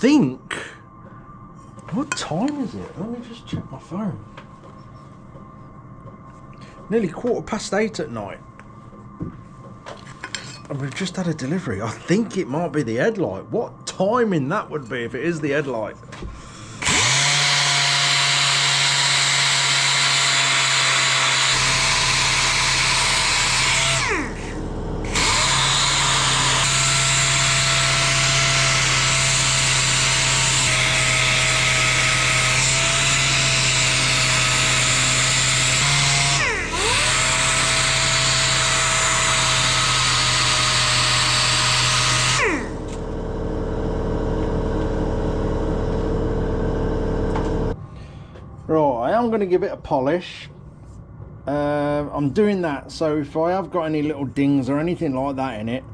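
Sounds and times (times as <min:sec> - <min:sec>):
sander running: 0:16.6 - 0:47.8.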